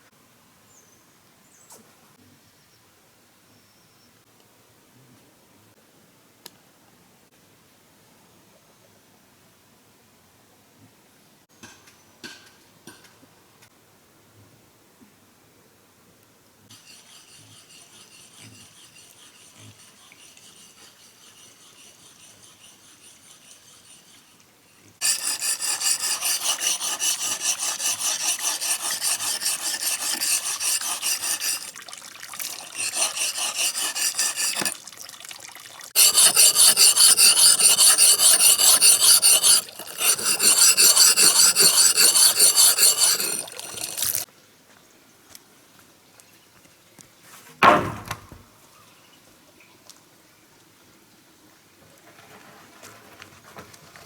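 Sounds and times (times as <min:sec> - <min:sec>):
hand tool rasping: 0:16.7 - 0:24.4, 0:25.0 - 0:31.8, 0:32.4 - 0:34.8, 0:36.0 - 0:44.3.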